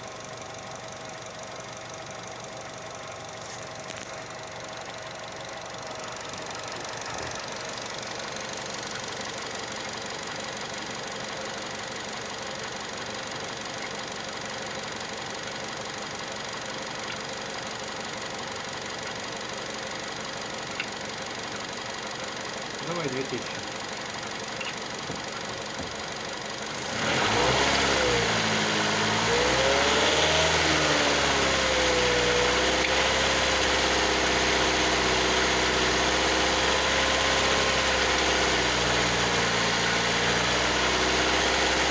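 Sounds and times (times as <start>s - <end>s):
engine running at raised revs: 22.8s - 23.8s, 24.5s - 41.9s
scraping squeaking mechanical noise: 24.5s - 24.9s.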